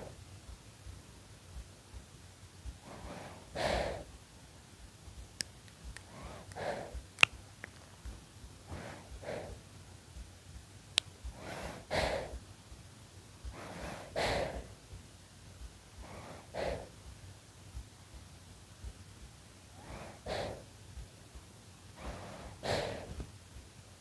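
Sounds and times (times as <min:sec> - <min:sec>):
baby breathing in sleep: 0:02.7 - 0:04.2, 0:05.8 - 0:07.2, 0:08.6 - 0:09.9, 0:11.2 - 0:12.5, 0:13.4 - 0:14.9, 0:15.9 - 0:17.1, 0:19.7 - 0:20.8, 0:21.9 - 0:23.4.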